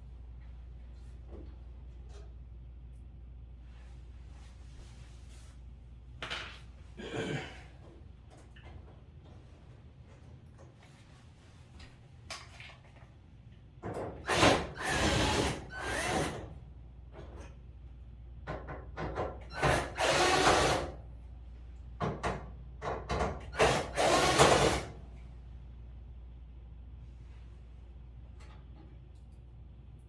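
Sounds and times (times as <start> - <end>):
power drill running: 14.3 - 16.4, 19.6 - 20.9, 23.6 - 24.9.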